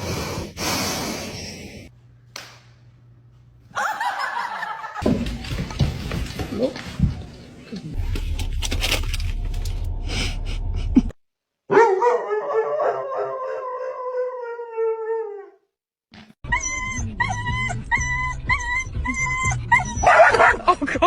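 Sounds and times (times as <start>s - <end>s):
dog yipping: 11.7s - 13.6s, 16.5s - 20.6s
dog howling: 11.9s - 15.6s.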